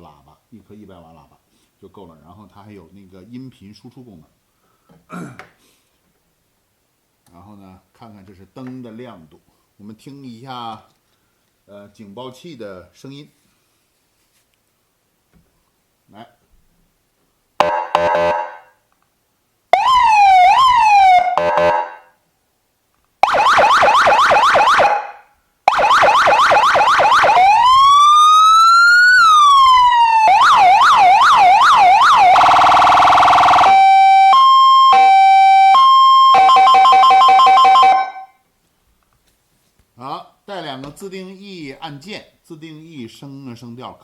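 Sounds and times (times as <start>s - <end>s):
electronic siren yelps and wails: 17.6s - 18.6s, 19.7s - 22.1s, 23.2s - 38.3s
buzzing horn tone: 17.6s - 18.7s.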